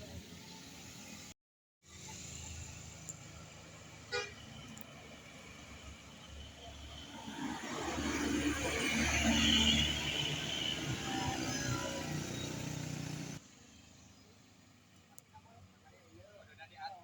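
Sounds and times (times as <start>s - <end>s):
traffic engine hum: 1.9s - 17.0s
vehicle horn toot: 4.1s - 4.4s.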